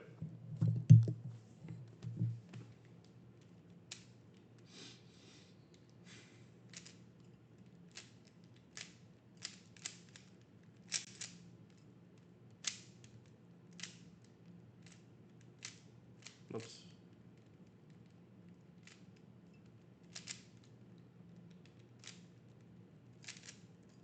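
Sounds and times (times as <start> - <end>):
puzzle cube clicking: 7.6 - 11.4, 12.2 - 14.1, 20.0 - 20.7, 21.4 - 22.3, 23.2 - 23.6.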